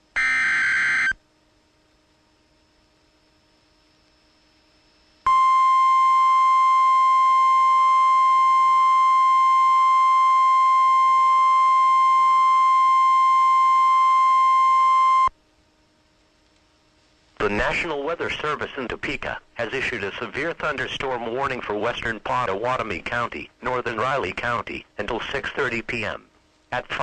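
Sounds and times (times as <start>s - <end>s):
steady high alarm tone: 0.1s - 1.2s, 5.2s - 15.3s.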